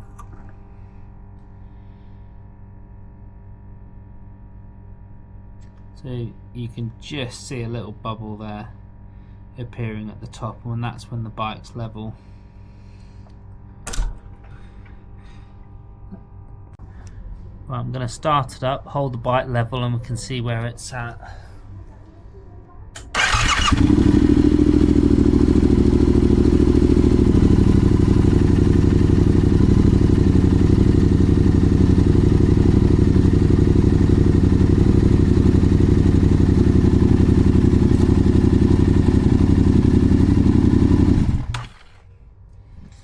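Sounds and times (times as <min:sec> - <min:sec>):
motorcycle electric starter: 0:23.0 - 0:25.6, 0:40.3 - 0:42.0
motorcycle engine idling: 0:23.2 - 0:42.0.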